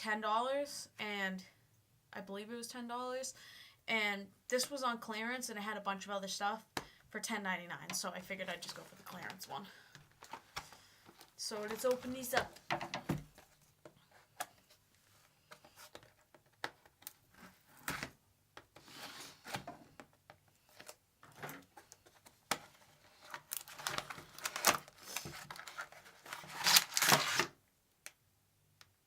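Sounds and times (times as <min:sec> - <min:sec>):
packaging tearing and crinkling: 0:23.2 - 0:27.5.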